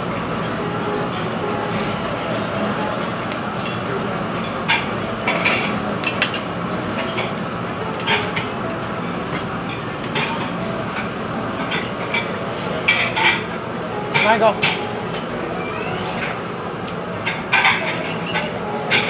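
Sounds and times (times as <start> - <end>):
cutlery and plates clinking: 17.2 - 19.0.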